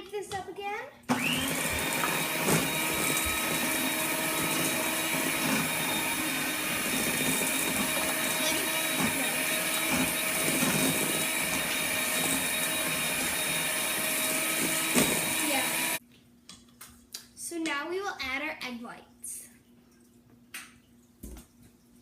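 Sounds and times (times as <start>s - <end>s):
electric mixer whining: 1.1s - 16.0s.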